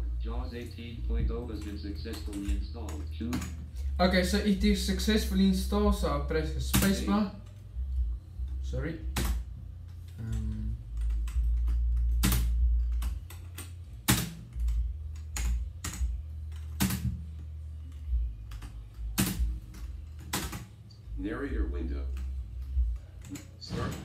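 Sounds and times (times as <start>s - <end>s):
steady low hum: 0.0s - 24.0s
computer keyboard typing: 1.4s - 3.7s, 10.2s - 17.1s, 17.8s - 20.7s.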